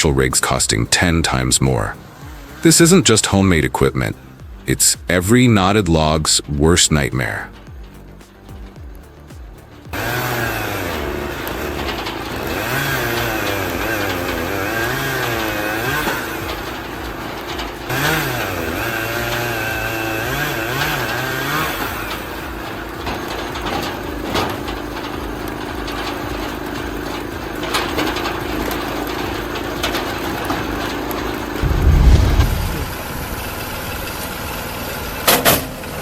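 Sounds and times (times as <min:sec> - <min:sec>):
log splitter engine running: 0:00.0 - 0:36.0.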